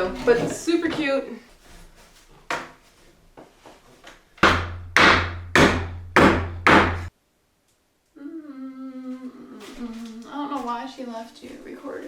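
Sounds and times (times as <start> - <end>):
hammer blows on wood: 4.4 - 7.1.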